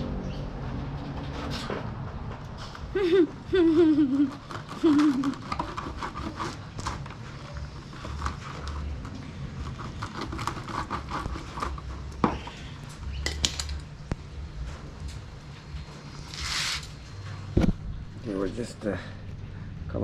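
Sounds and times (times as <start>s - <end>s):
scratching and rustling: 0.6s - 18.9s.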